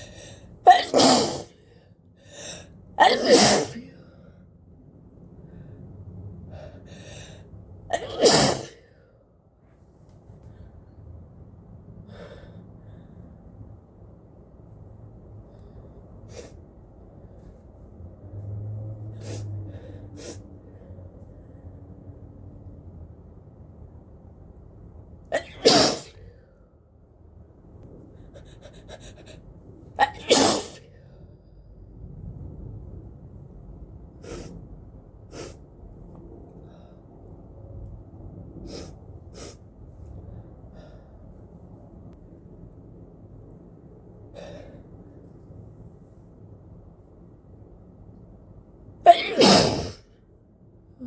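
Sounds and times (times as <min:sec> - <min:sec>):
person sneezing: 0:00.7 - 0:01.6, 0:03.0 - 0:04.0, 0:08.0 - 0:08.8, 0:25.4 - 0:26.2, 0:30.0 - 0:30.8, 0:49.1 - 0:50.0.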